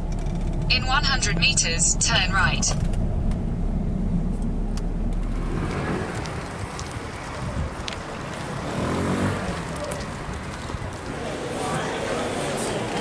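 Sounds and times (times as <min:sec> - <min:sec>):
deep low rumble: 0:00.0 - 0:08.0
vehicle engine and road noise: 0:00.0 - 0:13.0.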